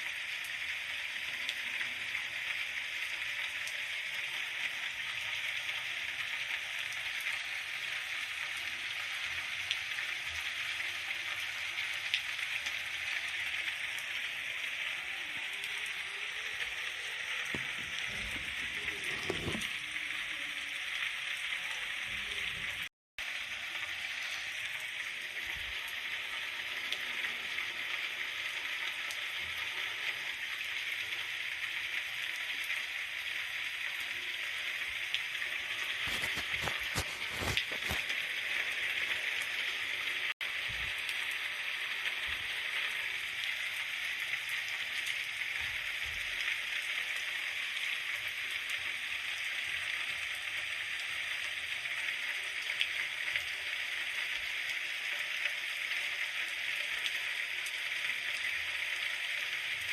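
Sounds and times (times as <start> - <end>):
steady rain falling: 23.3 - 59.9.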